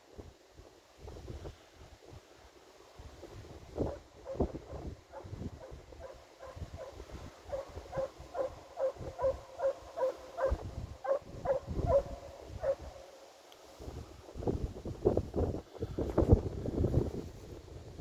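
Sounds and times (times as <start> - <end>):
wind buffeting microphone: 0.0 - 13.0, 13.7 - 18.0
hound baying in short yelps: 7.5 - 12.8.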